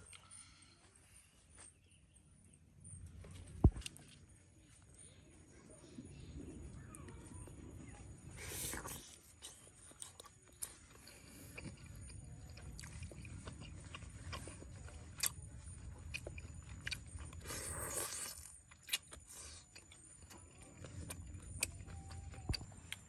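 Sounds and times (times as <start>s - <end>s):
person chewing food: 0.0s - 0.9s, 8.3s - 23.0s.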